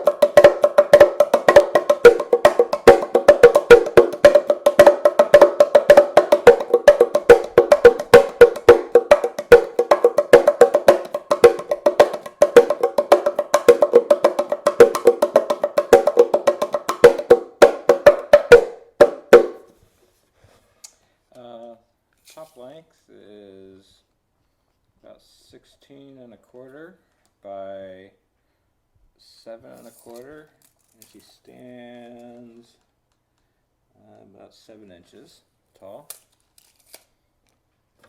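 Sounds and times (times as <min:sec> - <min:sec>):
cajon drum played by hand: 0:00.0 - 0:19.7.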